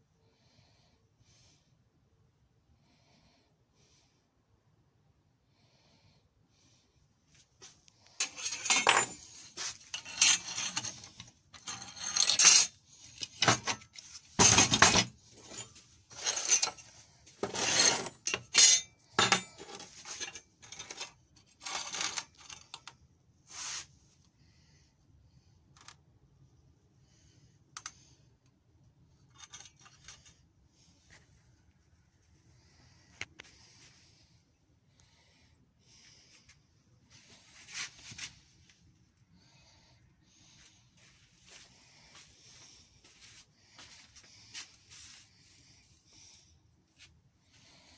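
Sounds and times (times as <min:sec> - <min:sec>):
metal objects clinking: 0:08.2 - 0:22.8.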